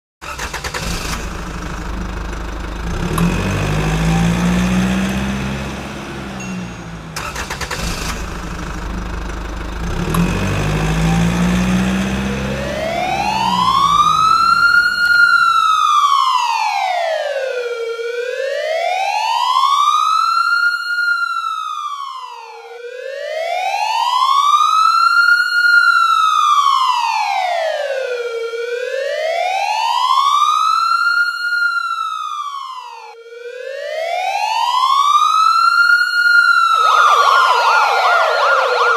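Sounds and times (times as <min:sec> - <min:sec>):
car engine revving: 0:00.2 - 0:15.8
police siren wailing: 0:00.4 - 0:38.9.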